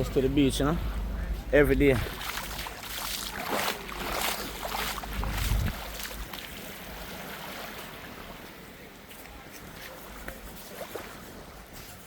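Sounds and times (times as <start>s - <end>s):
wind buffeting microphone: 0.0s - 7.2s
surf washing on shore: 0.8s - 12.0s.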